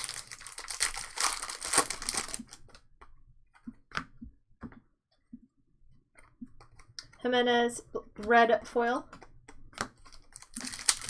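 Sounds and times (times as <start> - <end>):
card pack wrapper crinkling: 0.0 - 2.8, 9.8 - 11.0
cards clicking and tapping: 9.1 - 11.0.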